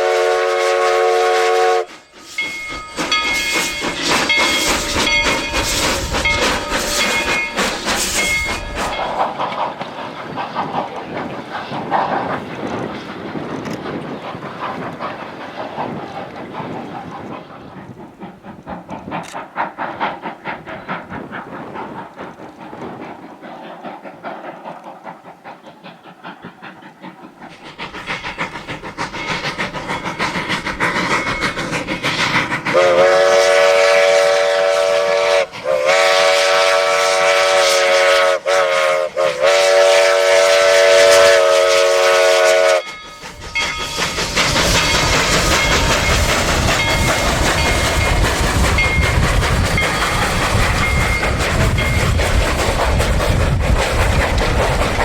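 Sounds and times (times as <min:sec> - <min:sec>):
steam whistle blasts: 0:00.0 - 0:02.5, 0:32.7 - 0:42.9
train cars clattering over rails: 0:42.9 - 0:55.0.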